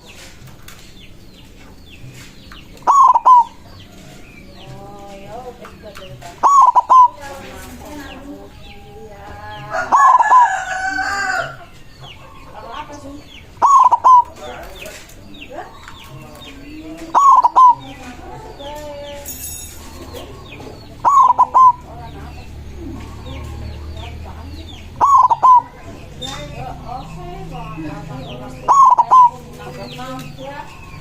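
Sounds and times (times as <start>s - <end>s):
small birds chirping faintly: 0.0s - 31.0s
dove cooing: 2.7s - 11.6s, 12.2s - 31.0s
rooster crowing: 9.5s - 11.6s.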